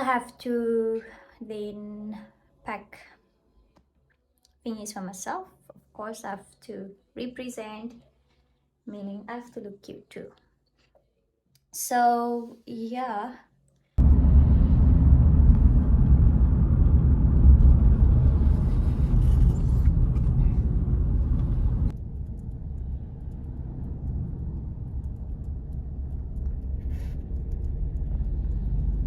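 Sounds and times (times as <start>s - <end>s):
car rumble in motion: 14.0s - 29.0s.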